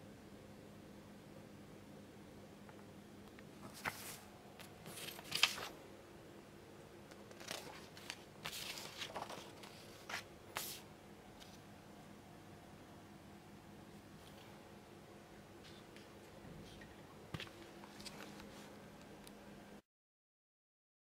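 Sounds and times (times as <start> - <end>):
faint low hum: 0.0 - 19.8
rustling and scraping handling: 3.6 - 5.8, 7.2 - 10.8, 17.4 - 18.8.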